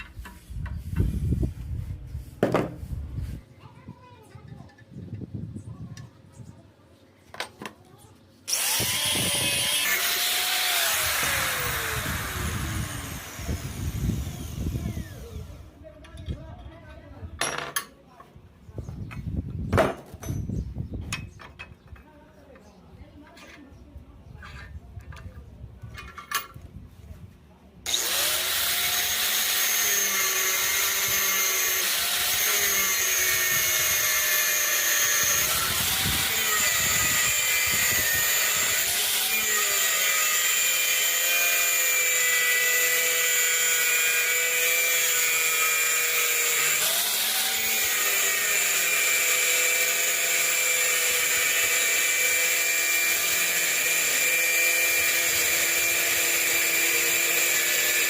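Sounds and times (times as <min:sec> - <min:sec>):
power tool whining: 0:08.5 - 0:15.7, 0:27.9 - 0:58.0.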